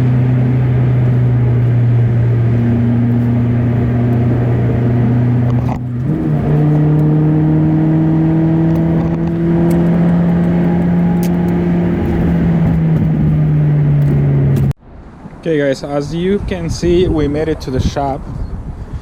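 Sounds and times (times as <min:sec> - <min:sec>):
car engine accelerating: 0:00.0 - 0:14.8.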